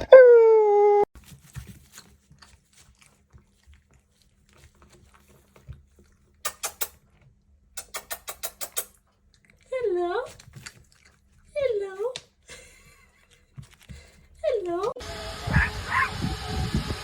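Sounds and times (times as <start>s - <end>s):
dog howling whine: 15.4s - 16.4s.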